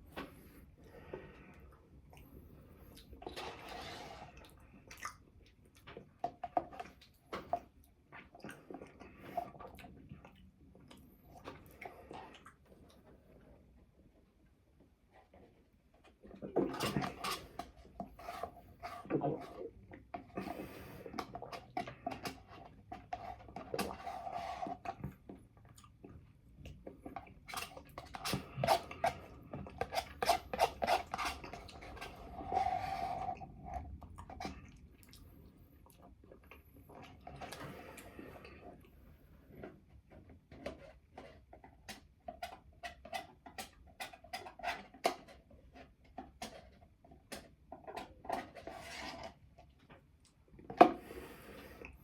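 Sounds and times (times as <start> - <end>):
food containers and utensils scraping: 3.2 - 4.6, 16.2 - 25.2, 27.0 - 34.7.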